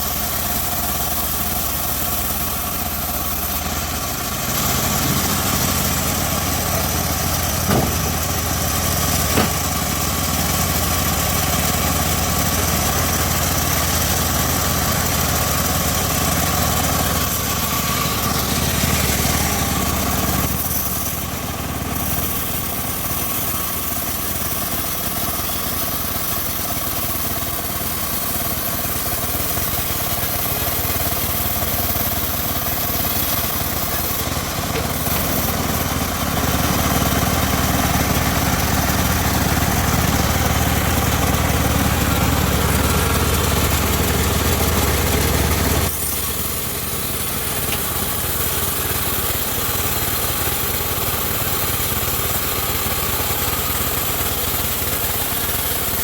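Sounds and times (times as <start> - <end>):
bandsaw sawmill humming: 0.0 - 56.0
short knocks: 7.6 - 8.3, 9.3 - 9.9.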